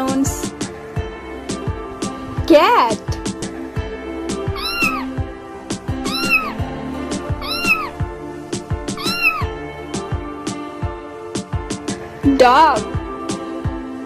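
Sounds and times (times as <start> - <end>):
background music with steady beat: 0.0 - 14.0
cat meowing: 4.5 - 5.2, 5.9 - 6.7, 7.3 - 8.0, 8.9 - 9.6.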